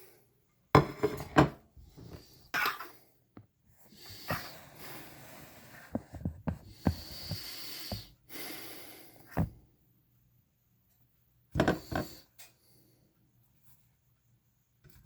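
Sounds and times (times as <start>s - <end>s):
person breathing heavily: 3.8s - 9.5s.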